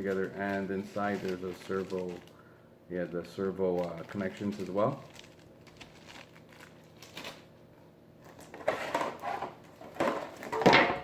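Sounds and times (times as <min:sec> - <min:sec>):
plastic bags crinkling: 0:00.0 - 0:02.4, 0:03.3 - 0:07.5.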